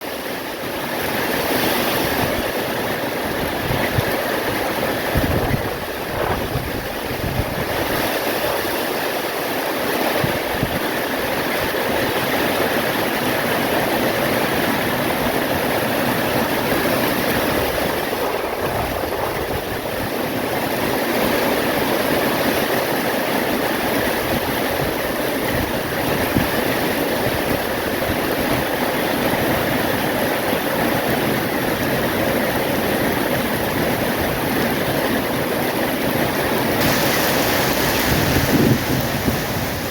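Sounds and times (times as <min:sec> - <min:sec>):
heavy rain pouring: 0:00.0 - 0:39.9
wind: 0:00.0 - 0:39.9.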